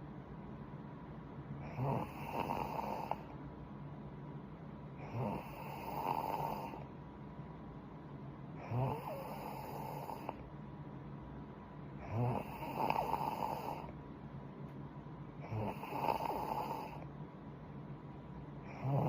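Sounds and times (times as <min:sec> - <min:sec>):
woman snoring: 0:01.6 - 0:03.3, 0:05.0 - 0:06.8, 0:08.6 - 0:10.4, 0:12.0 - 0:13.9, 0:15.4 - 0:17.0, 0:18.7 - 0:19.0.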